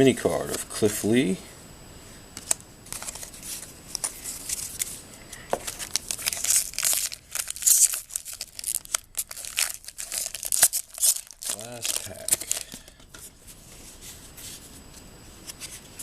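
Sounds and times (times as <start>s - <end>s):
foil wrapper tearing and crinkling: 2.4s - 4.9s, 5.6s - 13.0s.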